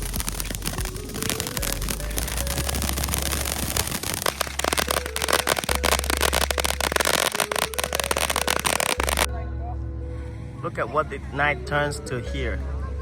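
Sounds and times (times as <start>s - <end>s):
fireworks crackling: 0.0s - 9.3s.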